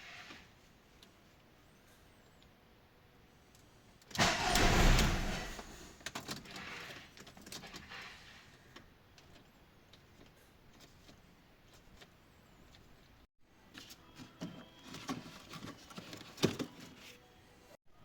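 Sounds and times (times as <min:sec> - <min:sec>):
car starter motor running: 0:04.1 - 0:05.9.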